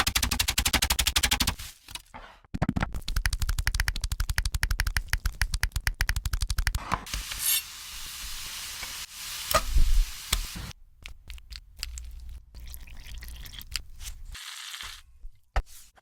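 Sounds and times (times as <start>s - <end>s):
food sizzling in a hot pan: 7.1s - 10.7s.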